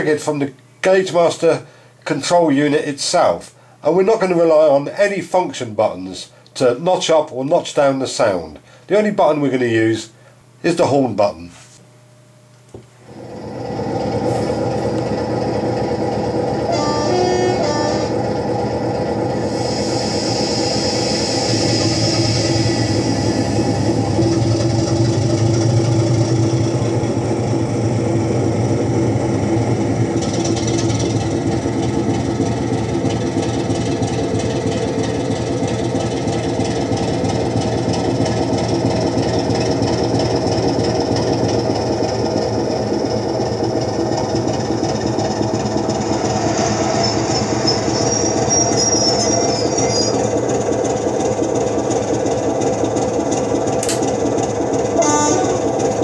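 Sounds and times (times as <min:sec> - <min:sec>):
diesel locomotive engine: 0:13.0 - 0:56.0.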